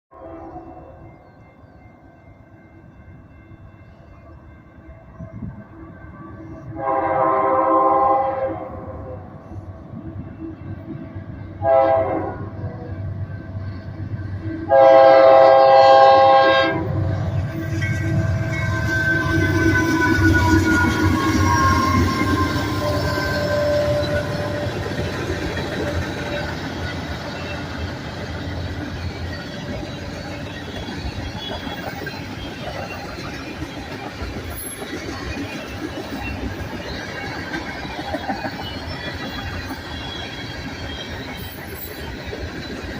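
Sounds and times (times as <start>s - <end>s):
freight train rumble: 0.2s - 42.9s
locomotive air horn blasts: 6.7s - 9.2s, 11.6s - 12.8s, 14.7s - 17.1s
faint high squeal: 17.6s - 27.9s.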